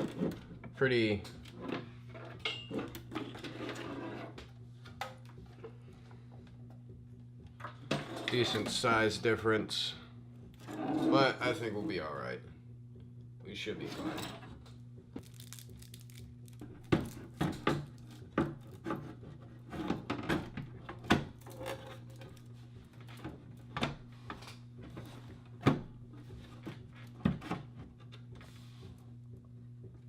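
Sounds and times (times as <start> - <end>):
steady low hum: 0.0 - 30.0
packaging crinkling: 15.2 - 17.4.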